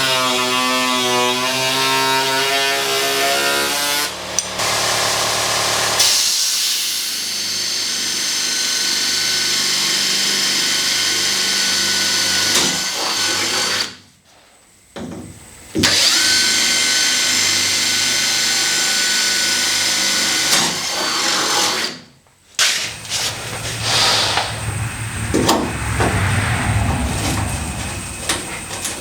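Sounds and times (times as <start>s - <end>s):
power tool running: 22.6s - 25.6s.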